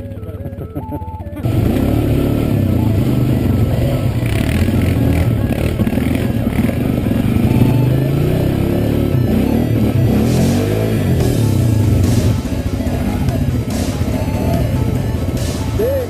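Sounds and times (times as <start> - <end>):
background music: 0.0 - 16.0
quad engine revving: 0.2 - 16.0.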